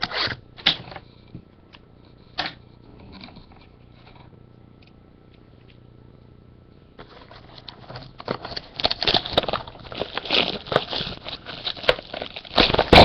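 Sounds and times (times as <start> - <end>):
cardboard boxes rustling and clicking: 7.0 - 13.0.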